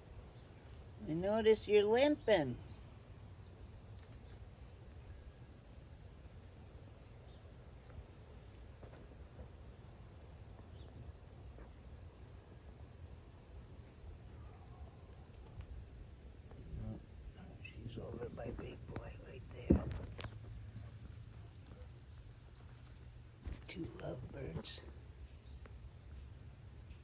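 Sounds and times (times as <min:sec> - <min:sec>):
insects trilling: 0:00.0 - 0:27.0
faint low rumble: 0:15.6 - 0:25.0.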